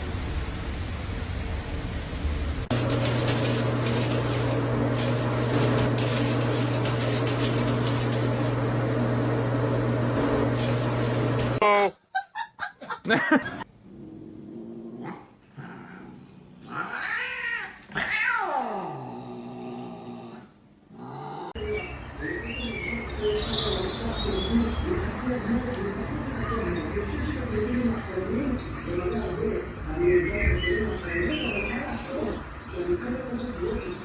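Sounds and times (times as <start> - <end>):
loud whirring with low hum: 0.0 - 11.6
cat meowing and yowling: 16.9 - 18.8.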